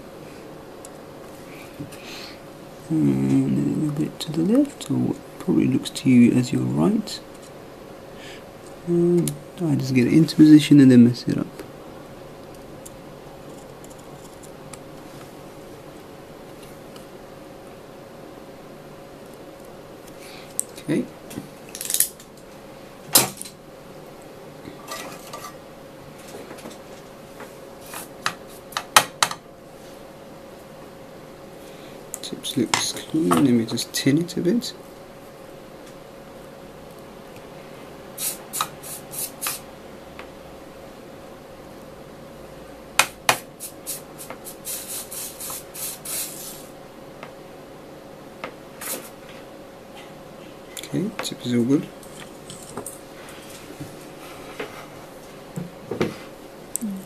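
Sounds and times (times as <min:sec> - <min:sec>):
soldering iron hissing sizzles: 0:38.2 - 0:39.7, 0:43.4 - 0:46.8.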